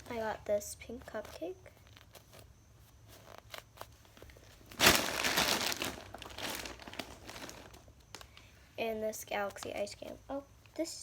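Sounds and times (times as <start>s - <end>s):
toys rustling and crinkling: 1.0s - 8.5s.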